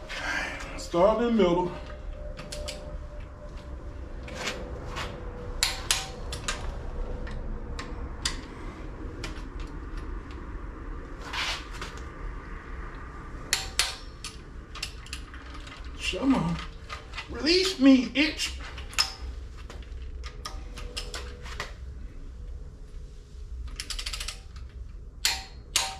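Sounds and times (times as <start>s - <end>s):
metallic clicks of torque wrench: 23.7s - 24.6s.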